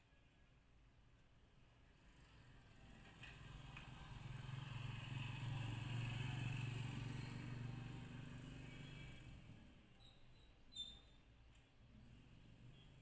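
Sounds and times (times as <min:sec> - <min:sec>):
vehicle engine passing by: 0:02.1 - 0:09.7.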